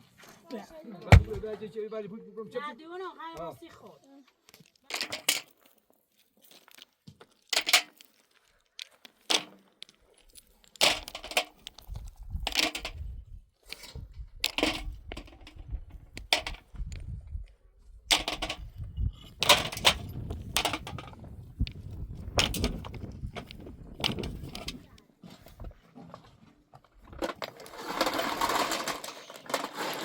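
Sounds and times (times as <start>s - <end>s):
knocks and scraping: 1.0s - 1.6s, 9.2s - 9.9s, 10.8s - 17.1s, 18.1s - 30.0s.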